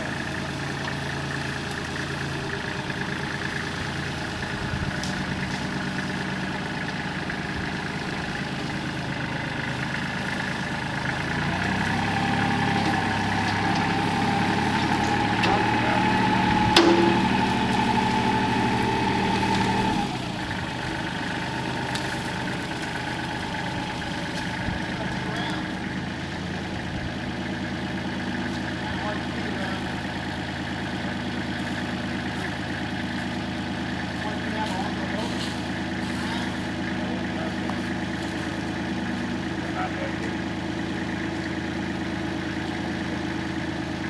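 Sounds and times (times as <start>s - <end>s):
chainsaw engine running: 0.0s - 44.0s
sharp crack: 14.6s - 19.9s.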